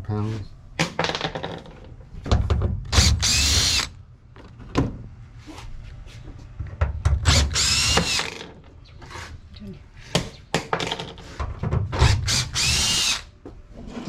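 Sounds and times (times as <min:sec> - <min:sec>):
power drill motor whine: 0:03.0 - 0:03.9, 0:07.3 - 0:08.3, 0:12.2 - 0:13.3.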